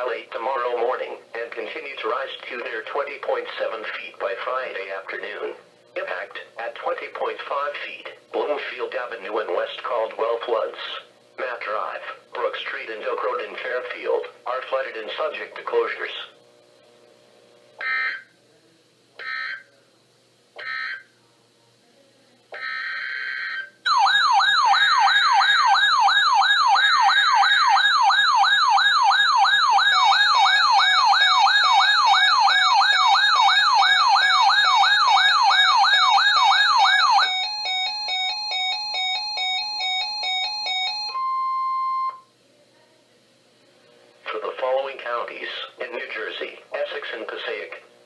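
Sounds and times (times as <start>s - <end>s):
fast-warbling electronic alert siren: 17.8s - 18.3s, 19.2s - 19.7s, 20.6s - 21.1s, 22.6s - 42.1s
steady warning alarm tone: 17.8s - 18.3s, 19.2s - 19.7s, 20.6s - 21.1s, 22.5s - 42.3s.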